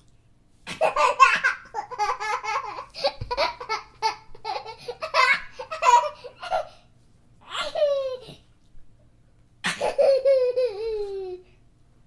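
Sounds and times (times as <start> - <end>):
young child laughing: 0.7 - 6.8, 7.4 - 8.5, 9.6 - 11.6.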